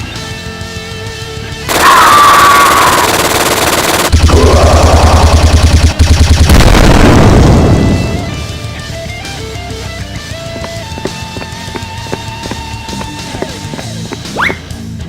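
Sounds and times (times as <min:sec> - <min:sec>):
action music: 0:00.0 - 0:15.0
rapid machine-gun fire: 0:01.7 - 0:08.2.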